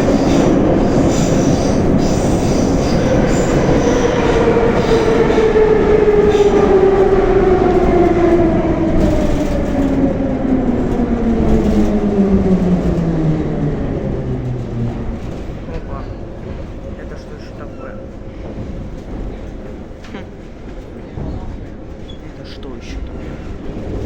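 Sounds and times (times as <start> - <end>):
rumbling wheel noise: 0.0 - 24.0.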